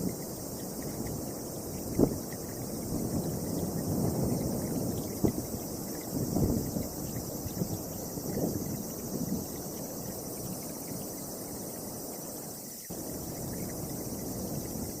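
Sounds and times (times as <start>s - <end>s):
steady high hiss: 0.0s - 15.0s
wind gusting against microphone: 0.0s - 15.0s.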